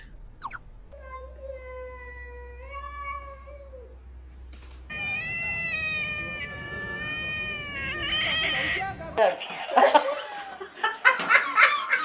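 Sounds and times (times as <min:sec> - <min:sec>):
cat yowling: 0:04.9 - 0:09.0.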